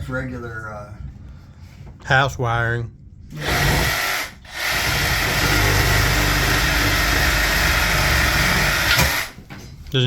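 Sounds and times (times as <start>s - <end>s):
small electric saw cutting: 3.4s - 9.4s.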